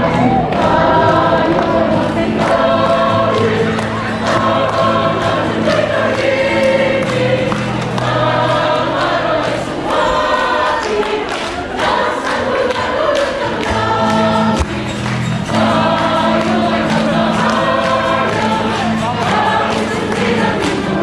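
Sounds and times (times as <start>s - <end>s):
sustained low accompaniment: 0.0s - 10.7s
choir singing held notes: 0.0s - 21.0s.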